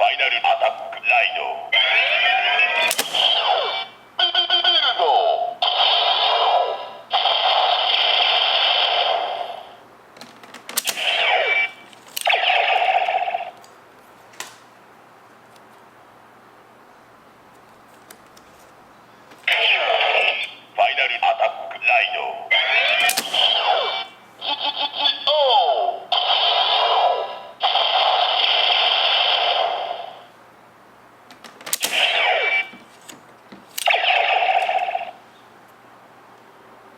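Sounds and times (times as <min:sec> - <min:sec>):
toy electronic sound effect: 0:01.8 - 0:09.7, 0:10.8 - 0:13.6, 0:19.5 - 0:30.2, 0:31.8 - 0:32.8, 0:33.8 - 0:35.2
sharp plastic clicks: 0:02.8 - 0:03.3, 0:10.2 - 0:11.1, 0:23.0 - 0:23.5, 0:31.3 - 0:32.2.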